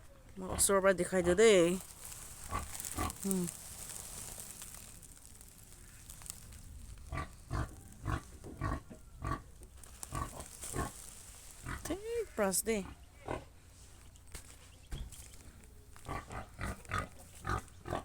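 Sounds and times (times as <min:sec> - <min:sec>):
pig grunting: 0:02.4 - 0:03.6, 0:07.0 - 0:09.5, 0:10.1 - 0:11.0, 0:11.6 - 0:13.6, 0:16.1 - 0:18.0.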